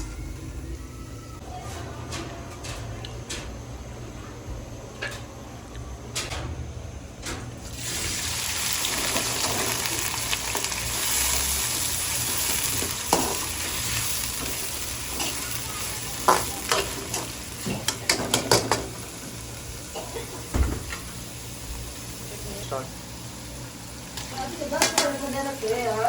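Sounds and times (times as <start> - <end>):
food sizzling in hot oil: 7.6 - 26.0.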